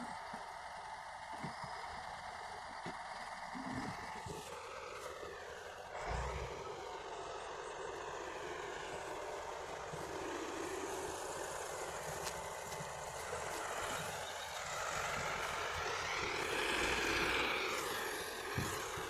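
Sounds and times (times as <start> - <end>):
construction machinery diesel engine: 0.0 - 19.0.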